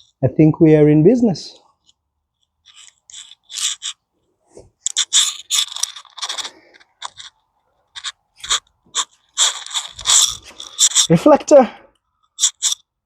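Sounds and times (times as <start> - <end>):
handling noise crunching clicks: 4.8 - 11.2.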